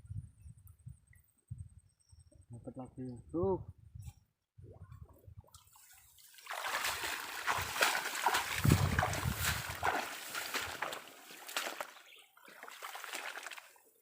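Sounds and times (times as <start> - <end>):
water splashing and sloshing: 4.9 - 14.0
eel thrashing in water: 6.3 - 13.8.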